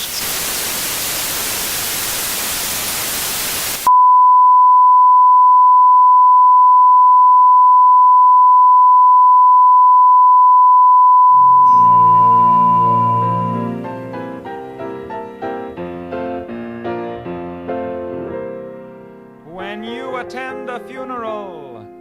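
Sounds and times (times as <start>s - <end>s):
loud static hiss: 0.0s - 3.9s
steady broadcast test tone: 0.0s - 13.8s
piano music: 11.4s - 22.0s.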